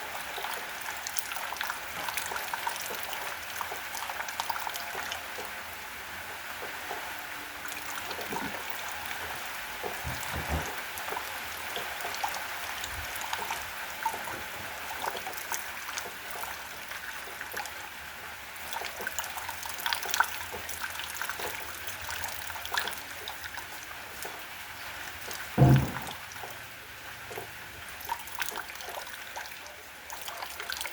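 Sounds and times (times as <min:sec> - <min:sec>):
rain falling: 0:07.8 - 0:16.8
loud dull thump: 0:25.6 - 0:26.3.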